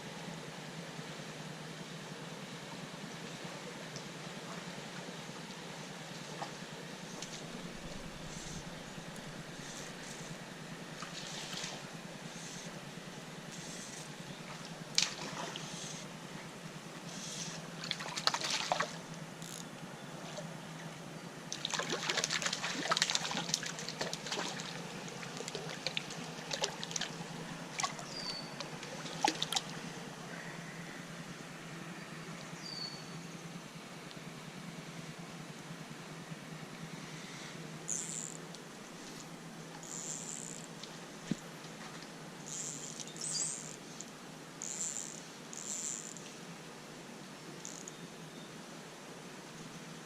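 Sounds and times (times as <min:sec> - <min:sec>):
low hum: 0:00.0 - 0:47.0
creek water running: 0:03.4 - 0:32.6
water splashing and sloshing: 0:06.2 - 0:12.8, 0:13.9 - 0:19.6, 0:20.2 - 0:30.1.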